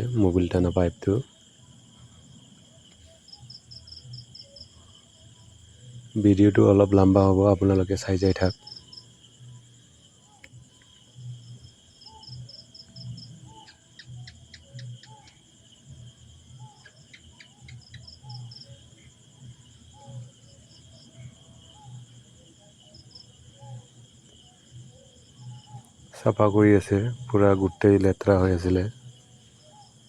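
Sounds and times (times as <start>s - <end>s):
insects chirring: 0.0s - 30.0s.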